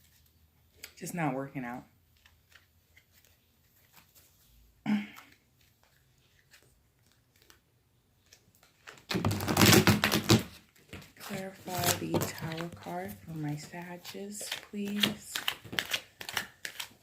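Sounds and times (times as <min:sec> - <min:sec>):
cards shuffling: 0:02.0 - 0:17.0
cards ticking: 0:11.3 - 0:17.0.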